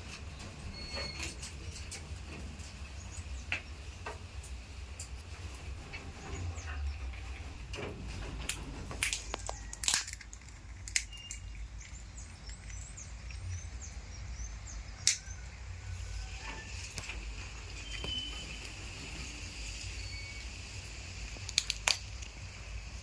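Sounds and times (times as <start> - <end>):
small birds chirping: 0.3 - 7.6, 10.6 - 20.5
sharp cracks and clicks: 8.4 - 14.0, 15.0 - 15.6, 21.2 - 22.5.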